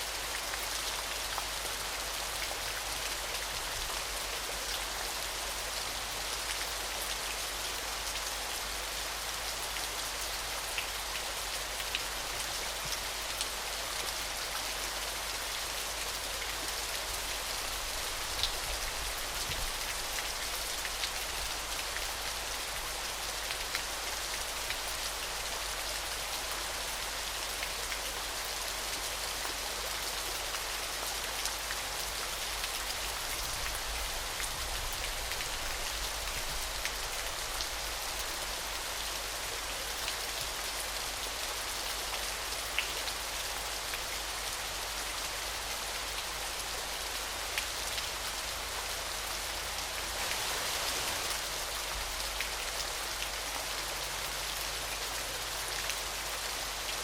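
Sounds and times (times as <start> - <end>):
waterfall splashing: 50.2 - 51.5.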